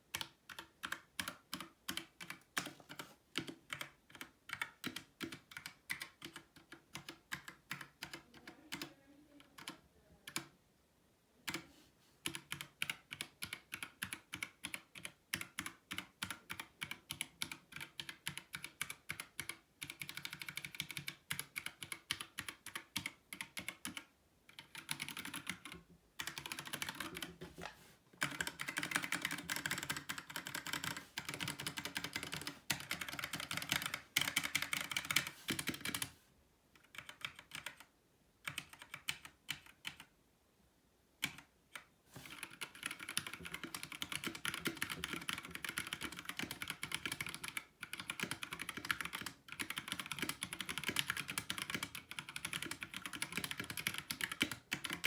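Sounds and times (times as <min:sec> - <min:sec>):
mechanical keyboard typing: 0:00.1 - 0:10.5, 0:11.5 - 0:36.1, 0:36.8 - 0:40.1, 0:41.2 - 0:55.0.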